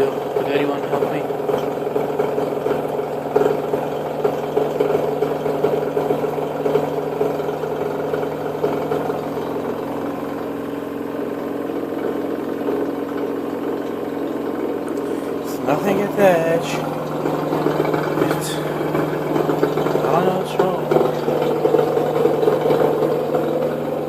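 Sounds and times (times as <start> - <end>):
machine rattling: 0.0 - 24.0
washer-dryer spin cycle hum: 0.0 - 24.0.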